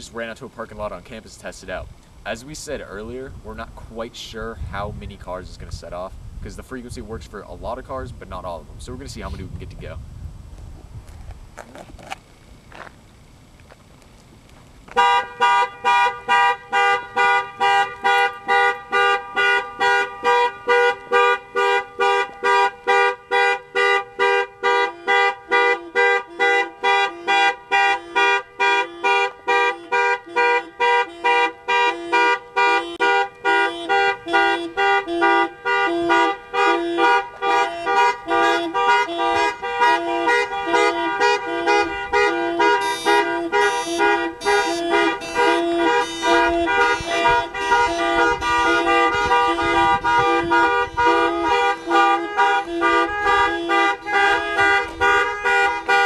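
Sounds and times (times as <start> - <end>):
car horn honking rapidly: 14.9 - 56.0
lower-pitched horn pulsing: 14.9 - 56.0.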